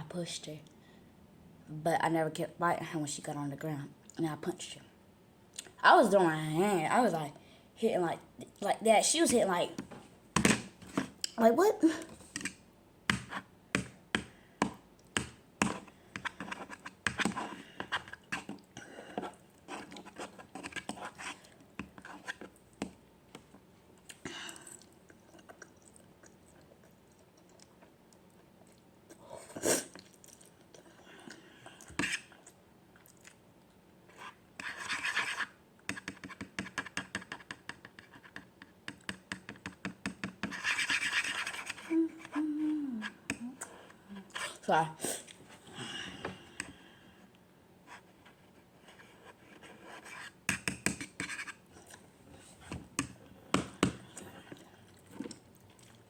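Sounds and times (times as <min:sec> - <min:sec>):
person chewing noodles: 0:24.0 - 0:29.2, 0:29.9 - 0:33.8, 0:54.0 - 0:56.0.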